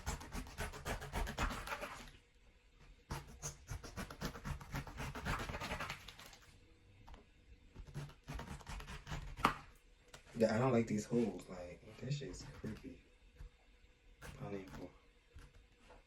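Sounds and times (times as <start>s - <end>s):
knife sawing through fruit rind: 0.0s - 2.1s, 3.1s - 6.3s, 7.8s - 9.7s, 12.2s - 12.9s, 14.2s - 15.0s.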